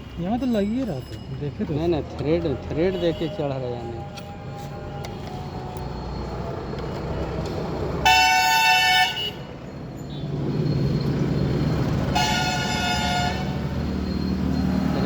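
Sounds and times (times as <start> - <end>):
vehicle horn blasts: 2.8 - 3.6, 8.0 - 9.5, 12.1 - 13.6.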